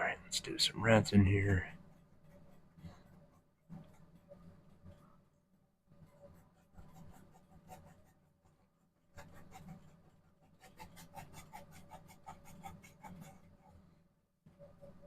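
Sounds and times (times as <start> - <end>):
paintbrush strokes on canvas: 5.9 - 13.9.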